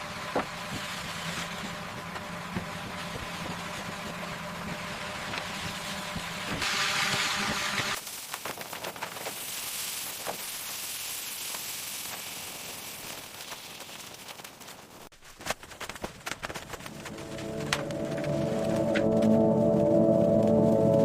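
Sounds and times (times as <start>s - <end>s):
steady hiss: 7.9s - 15.0s
sharp clicks and crackles: 8.0s - 19.4s.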